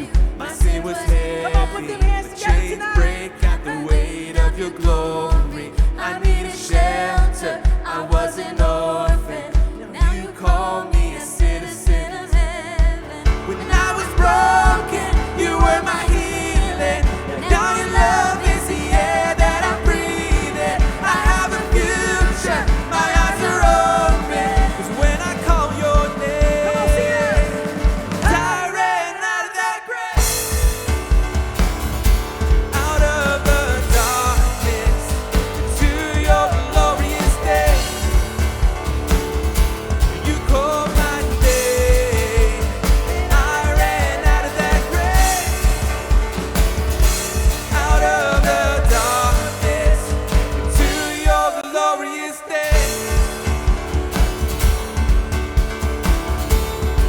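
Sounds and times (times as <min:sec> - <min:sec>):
kick drum steady beat: 0:00.0 - 0:28.5, 0:30.2 - 0:51.5, 0:52.7 - 0:57.0
person singing: 0:00.0 - 0:30.6, 0:32.7 - 0:38.7, 0:39.9 - 0:46.2, 0:47.4 - 0:53.6
worship band playing: 0:00.0 - 0:57.0.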